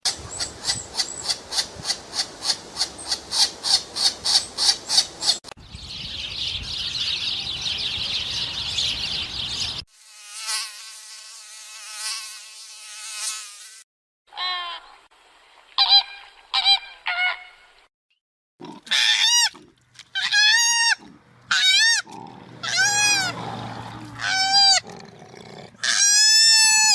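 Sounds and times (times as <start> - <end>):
bird chirping rapidly: 0.1 - 9.8
mosquito buzzing: 9.9 - 13.8
flamingos honking: 20.2 - 23.4, 24.1 - 24.8
rising-and-falling animal calls: 20.2 - 24.8.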